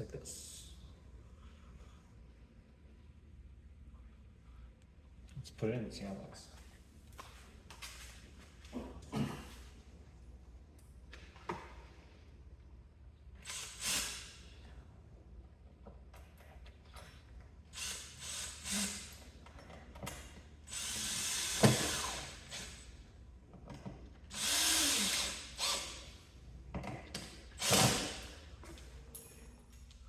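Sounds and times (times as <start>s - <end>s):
screwdriver ratcheting and grinding: 24.2s - 26.1s, 26.8s - 28.5s.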